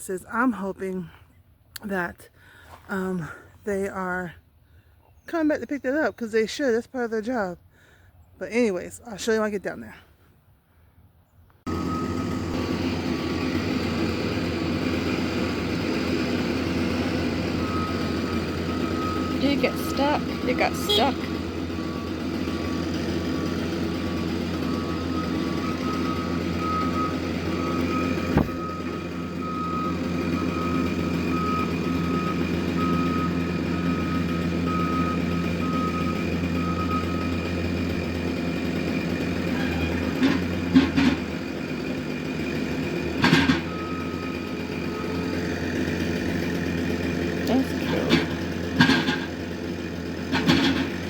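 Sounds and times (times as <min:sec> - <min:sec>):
truck engine running: 0:11.6 - 0:51.0
truck reversing alarm beeping: 0:11.7 - 0:51.0.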